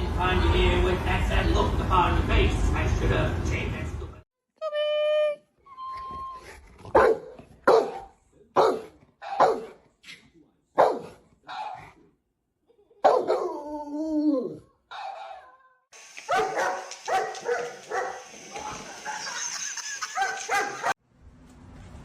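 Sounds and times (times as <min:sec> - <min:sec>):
dog barking: 0:06.9 - 0:09.8, 0:10.8 - 0:12.0, 0:13.0 - 0:13.6, 0:14.9 - 0:15.6, 0:16.3 - 0:18.3, 0:20.2 - 0:21.0.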